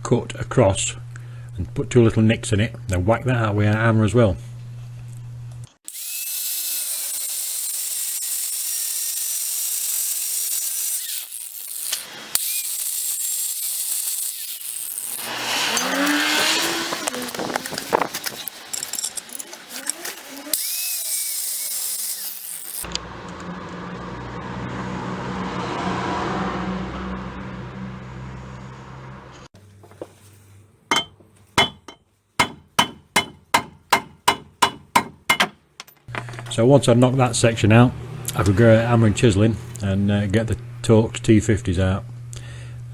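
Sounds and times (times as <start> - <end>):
mechanical hum: 0.0 - 8.9, 14.3 - 23.3, 32.5 - 42.9
angle grinder cutting metal: 5.8 - 23.0, 30.9 - 42.9
hammer striking metal: 30.9 - 36.6.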